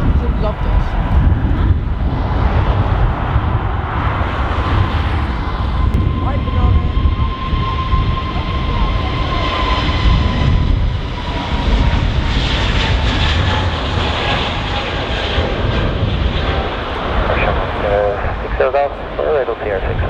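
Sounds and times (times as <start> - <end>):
jet engines rumbling with high whine: 0.0 - 20.0.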